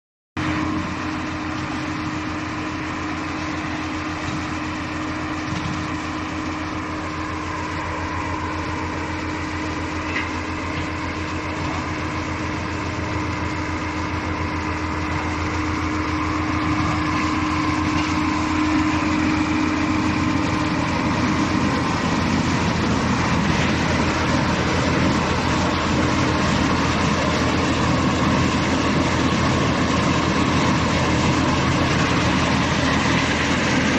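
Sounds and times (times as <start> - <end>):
wood chipper running: 0.4 - 33.9.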